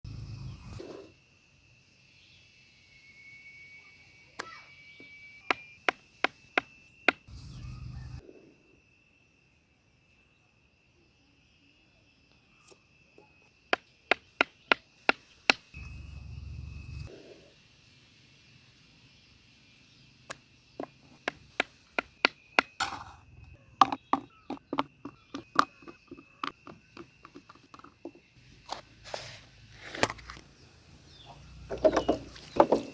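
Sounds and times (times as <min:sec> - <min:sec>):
insect trill: 0:00.1 - 0:29.6
faint high-pitched tone: 0:02.0 - 0:05.8.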